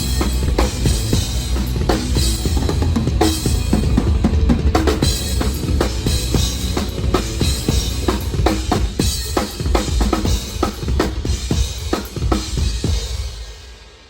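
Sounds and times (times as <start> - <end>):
cymbal wash: 0.0 - 14.0.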